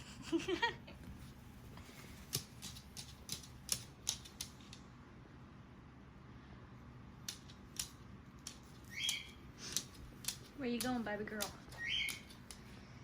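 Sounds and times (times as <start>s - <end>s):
parrot clicking and tapping toy: 2.3s - 4.8s, 7.2s - 12.7s.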